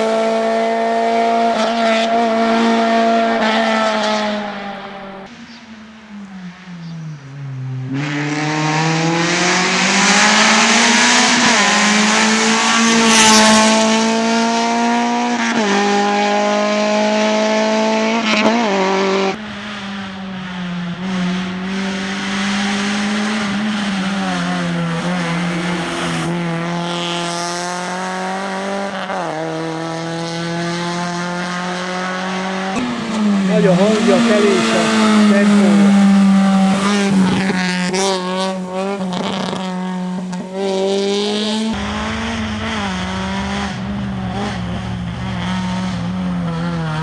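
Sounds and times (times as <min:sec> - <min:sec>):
rally car engine revving: 0:00.0 - 0:47.0
tyre and road noise: 0:18.4 - 0:47.0.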